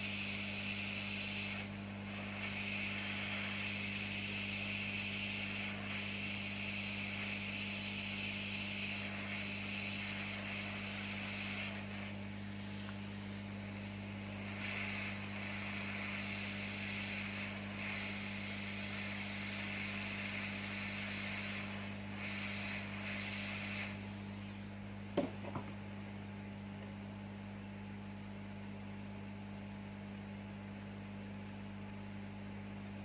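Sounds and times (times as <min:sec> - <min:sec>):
hiss: 0:00.0 - 0:25.4
electrical mains hum: 0:00.0 - 0:33.0.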